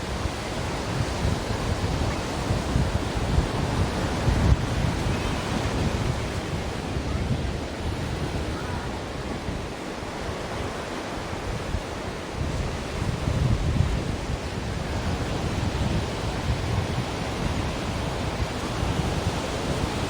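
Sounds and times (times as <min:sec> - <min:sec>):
ocean waves rushing: 0:00.0 - 0:12.5.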